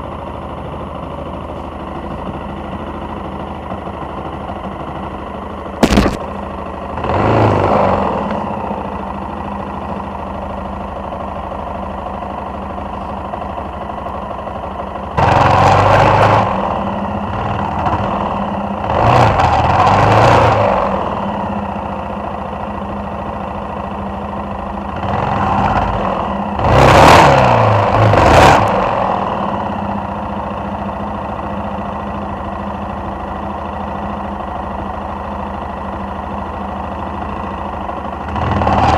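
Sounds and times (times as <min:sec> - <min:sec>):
motorcycle engine revving: 0:05.8 - 0:10.0, 0:14.6 - 0:22.4, 0:24.8 - 0:30.8, 0:38.0 - 0:38.9.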